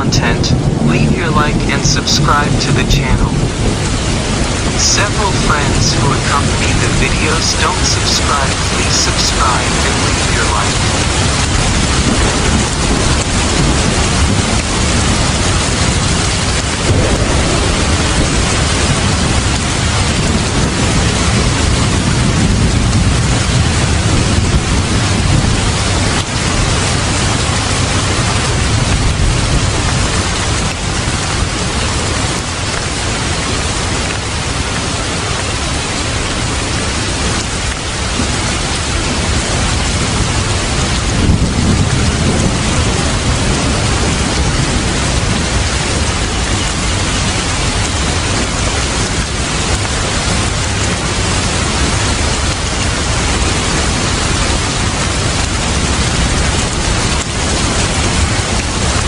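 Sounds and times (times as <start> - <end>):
heavy rain: 0.0 - 59.0
thunder rumbling: 10.0 - 25.6.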